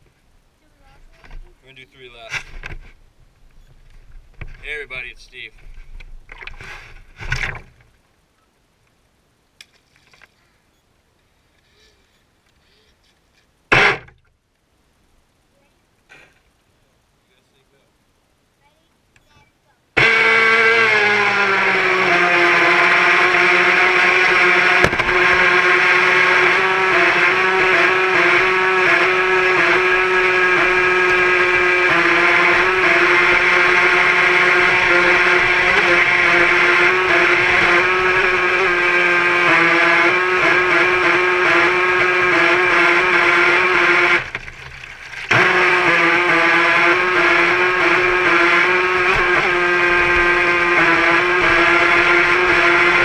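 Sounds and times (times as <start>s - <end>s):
model boat motor whining: 13.7s - 14.1s, 20.0s - 53.0s.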